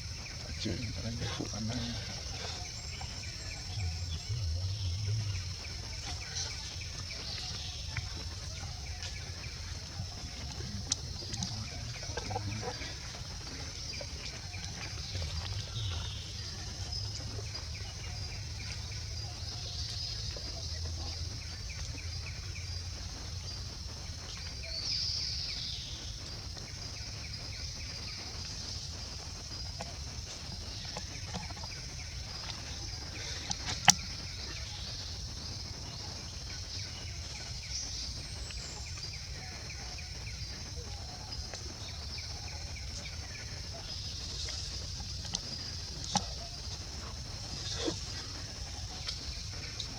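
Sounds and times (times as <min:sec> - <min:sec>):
low rumble: 0:00.0 - 0:24.2
bird calls: 0:00.0 - 0:49.9
steady high-pitched hum: 0:00.0 - 0:49.9.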